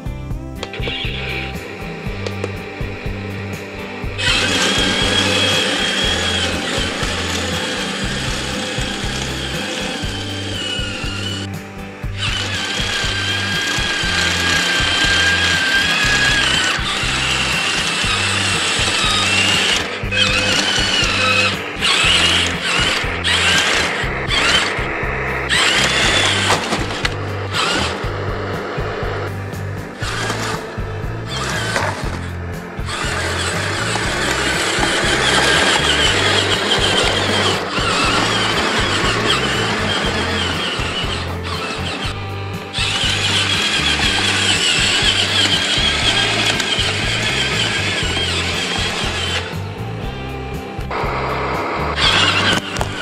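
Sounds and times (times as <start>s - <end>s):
electric motors and gearbox whining: 0.0s - 53.0s
low bass music: 0.0s - 53.0s.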